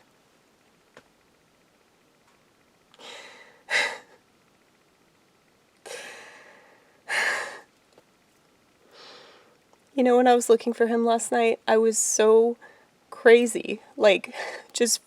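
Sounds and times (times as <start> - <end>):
person breathing heavily and sighing: 3.0 - 4.2, 5.8 - 7.7, 8.8 - 9.6.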